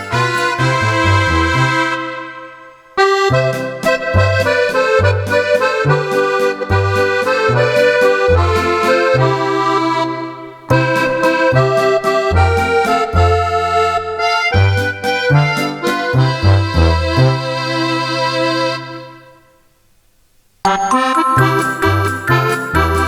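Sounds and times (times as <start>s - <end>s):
accordion melody with bass chords: 0.0s - 19.6s, 20.7s - 23.0s.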